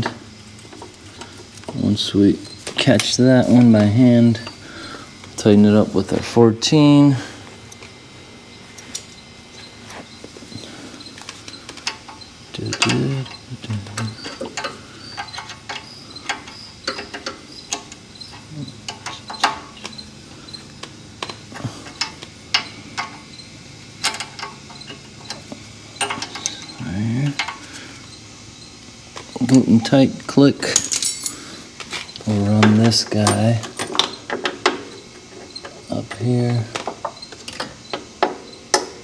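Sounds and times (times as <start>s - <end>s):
wrench clicking and tapping: 22.0s - 23.2s.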